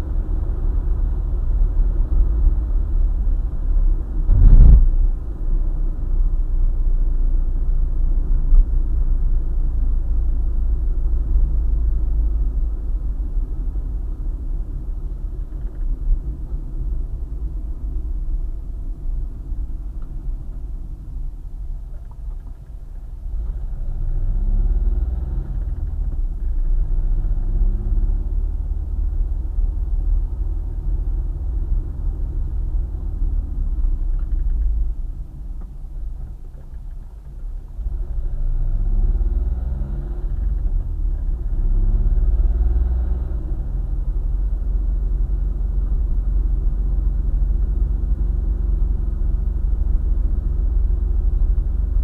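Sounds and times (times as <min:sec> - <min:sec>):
car road and engine rumble: 0:00.0 - 0:52.0
brief loud thump: 0:04.3 - 0:05.0.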